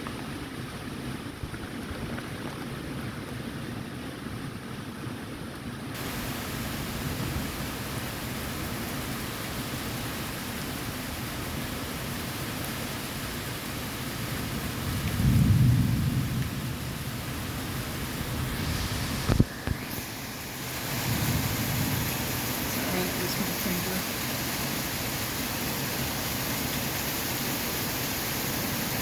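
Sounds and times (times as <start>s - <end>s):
steady rain: 0.0s - 29.0s
thunder rumbling: 13.9s - 29.0s.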